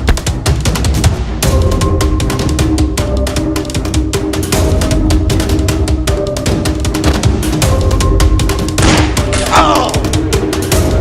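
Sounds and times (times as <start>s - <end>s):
tense action soundtrack music: 0.0s - 11.0s.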